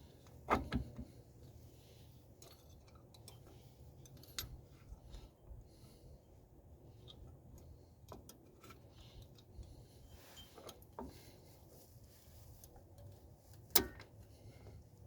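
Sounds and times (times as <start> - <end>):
metallic clicks and taps of tools: 2.4 - 4.6, 7.0 - 9.7, 12.6 - 14.2.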